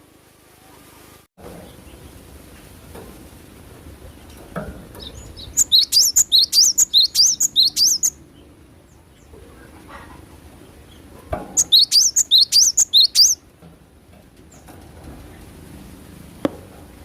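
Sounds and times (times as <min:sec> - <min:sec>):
bird singing rapid chirps: 0:05.0 - 0:09.4, 0:10.8 - 0:13.4.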